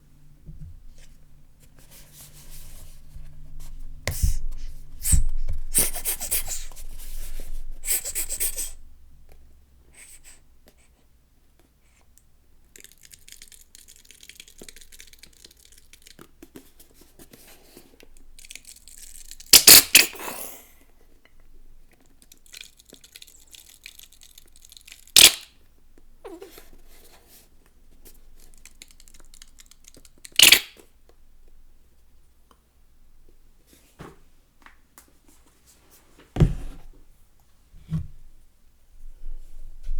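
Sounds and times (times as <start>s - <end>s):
plastic bottle crackling: 18.4s - 20.1s, 22.3s - 25.5s, 28.4s - 30.7s
gel squelching from bottle: 19.4s - 20.2s, 22.4s - 25.4s, 29.0s - 30.7s
sharp clicks: 19.5s - 20.1s, 25.2s - 25.5s, 28.8s - 30.7s.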